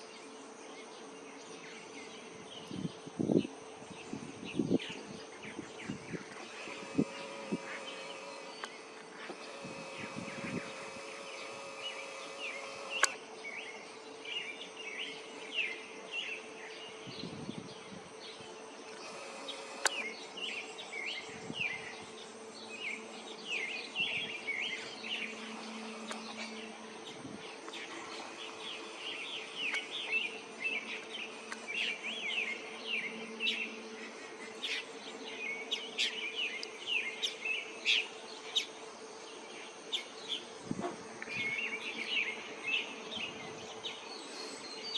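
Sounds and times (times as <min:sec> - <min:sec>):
steady low hum: 0:00.0 - 0:44.9
hummingbirds twittering: 0:04.5 - 0:40.6
hummingbird wings buzzing: 0:05.8 - 0:13.2, 0:18.8 - 0:33.6
sharp clicks: 0:06.3 - 0:13.2, 0:18.9 - 0:20.3, 0:25.0 - 0:32.0.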